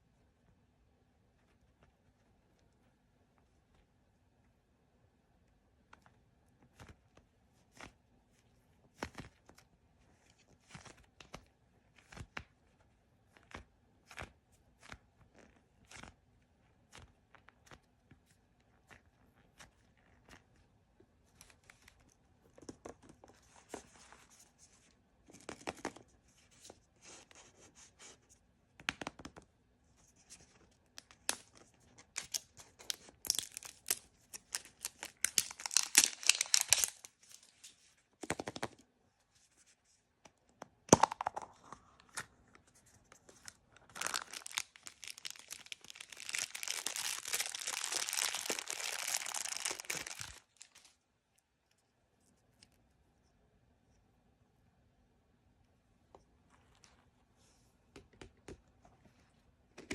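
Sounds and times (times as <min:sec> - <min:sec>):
plastic wrappers crinkling: 0:31.2 - 0:37.8, 0:43.3 - 0:51.0
wrapper tearing rustle: 0:32.1 - 0:37.8, 0:43.8 - 0:51.0.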